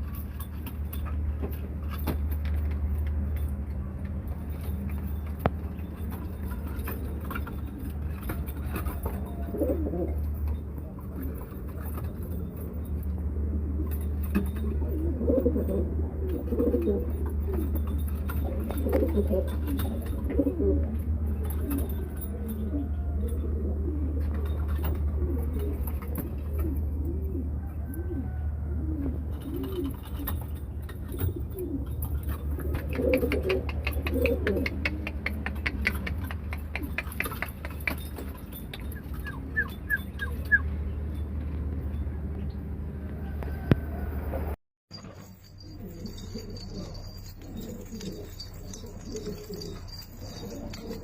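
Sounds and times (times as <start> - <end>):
pigeons cooing: 5.8 - 41.0, 45.5 - 51.0
quick run of clicks: 32.2 - 40.6.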